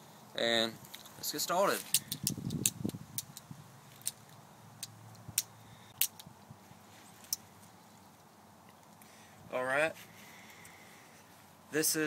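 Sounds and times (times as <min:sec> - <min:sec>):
butterfly knife handles clicking: 0:01.8 - 0:06.3.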